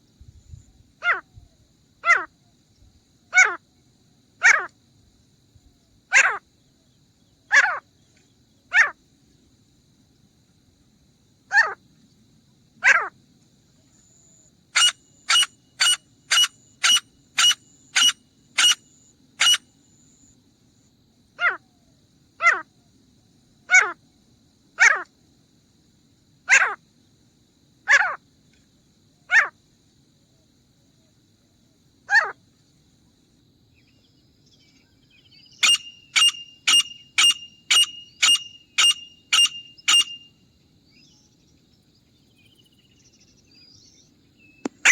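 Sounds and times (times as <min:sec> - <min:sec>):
francolin calling: 0:13.8 - 0:20.3, 0:33.8 - 0:44.9.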